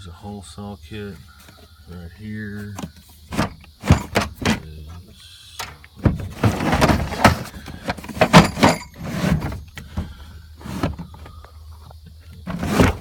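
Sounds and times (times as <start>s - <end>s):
metal tools rattling in toolbox: 3.8s - 4.6s, 6.2s - 9.6s.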